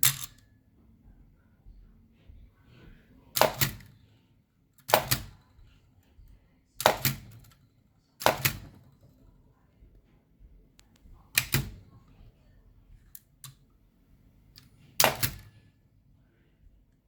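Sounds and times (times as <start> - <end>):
typewriter mechanism clacks: 0.0 - 0.4, 3.4 - 4.0, 4.8 - 5.5, 6.8 - 7.6, 8.2 - 8.9, 11.3 - 11.8, 14.6 - 15.5.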